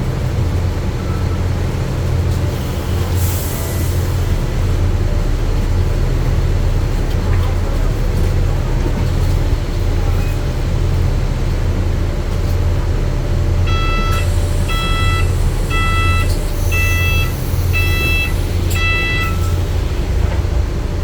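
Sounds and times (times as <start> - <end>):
bus engine idling: 0.0 - 21.0
door warning beeper: 13.7 - 19.7
air hiss of bus door: 14.1 - 19.6.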